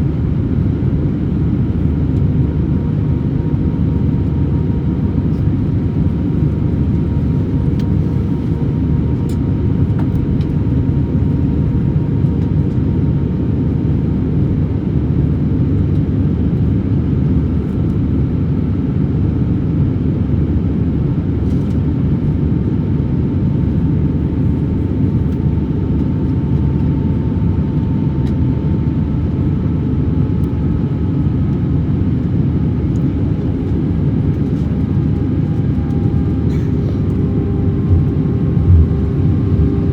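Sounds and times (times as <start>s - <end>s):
airliner cabin engine rumble: 0.0s - 39.9s
faint whine: 34.7s - 39.9s.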